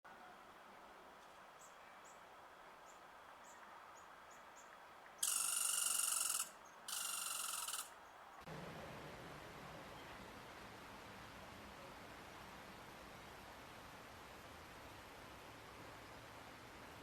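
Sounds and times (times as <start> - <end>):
faint high chirps: 2.9 - 7.9
buzzy high-pitched trills: 5.2 - 7.9.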